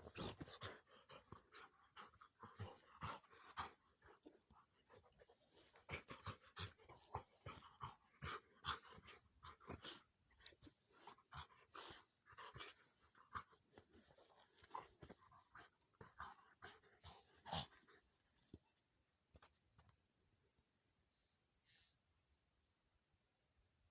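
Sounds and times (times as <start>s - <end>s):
dog panting: 0.0s - 18.4s.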